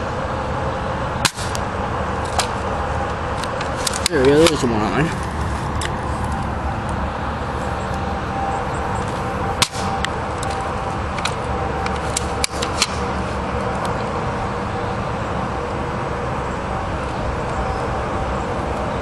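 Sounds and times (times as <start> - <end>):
rifle shots cracking: 1.2 - 1.6, 9.6 - 10.1.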